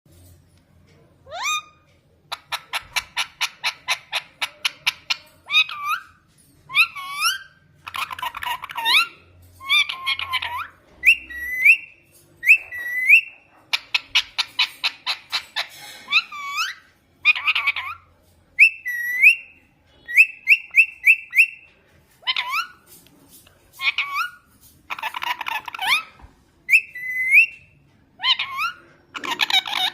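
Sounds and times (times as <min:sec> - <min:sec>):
parrot chirps: 0:01.2 - 0:23.0, 0:23.8 - 0:29.9
parrot whistling and calling: 0:01.3 - 0:22.8, 0:23.8 - 0:29.9.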